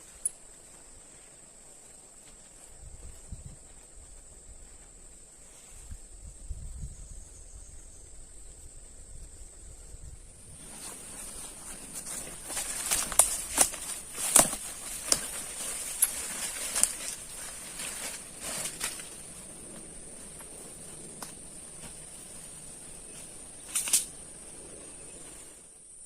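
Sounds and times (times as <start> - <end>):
rustling and clicking handling noises: 10.6 - 24.2.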